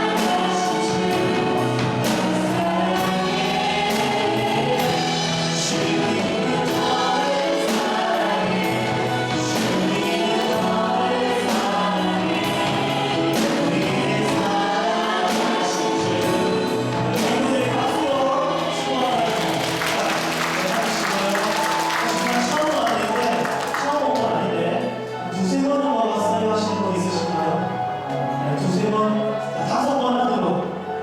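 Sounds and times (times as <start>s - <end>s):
band playing steady beat: 0.0s - 24.3s
congregation singing worship song: 0.0s - 31.0s.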